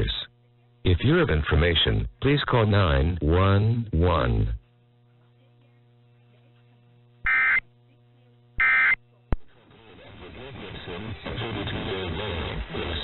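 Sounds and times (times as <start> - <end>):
faint steady hum: 0.0 - 13.0
buzzy digital data bursts: 7.3 - 7.6, 8.6 - 9.0.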